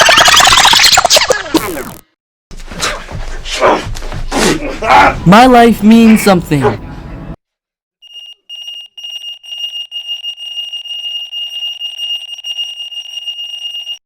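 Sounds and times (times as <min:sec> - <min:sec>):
high-pitched pulsing electronic alarm: 0:08.0 - 0:14.0.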